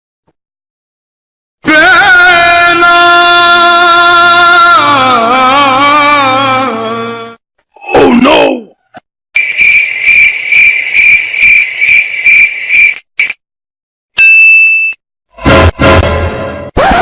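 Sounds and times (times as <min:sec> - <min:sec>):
crickets chirping: 0:09.4 - 0:13.0
high beep: 0:14.2 - 0:15.0.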